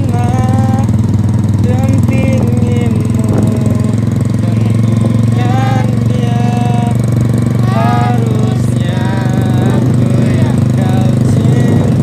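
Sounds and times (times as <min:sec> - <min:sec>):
engine running with rapid pulse: 0:00.0 - 0:12.0
voices calling out: 0:02.8 - 0:12.0.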